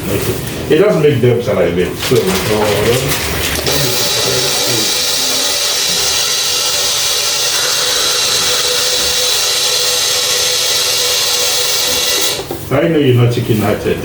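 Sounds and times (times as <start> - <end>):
dental equipment hissing: 3.6 - 12.6.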